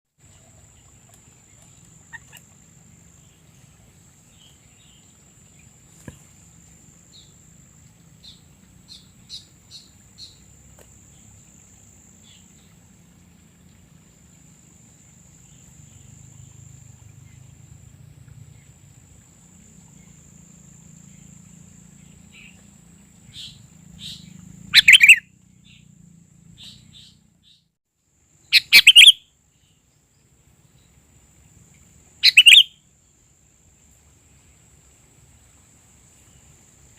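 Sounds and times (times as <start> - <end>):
bird chirping: 23.2 - 27.7, 28.5 - 29.2, 32.2 - 32.8.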